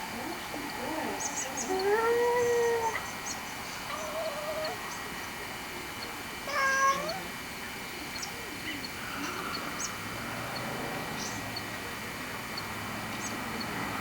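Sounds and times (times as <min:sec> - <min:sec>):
cat meowing: 0:01.6 - 0:03.0, 0:06.5 - 0:07.3.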